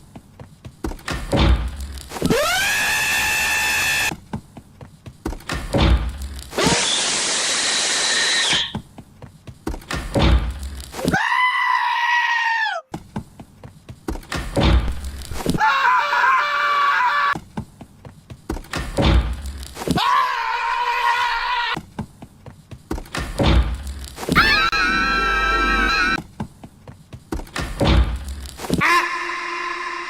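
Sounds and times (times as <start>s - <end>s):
cartoon scream sound effects: 2.3s - 4.1s, 24.4s - 26.2s, 28.8s - 30.0s.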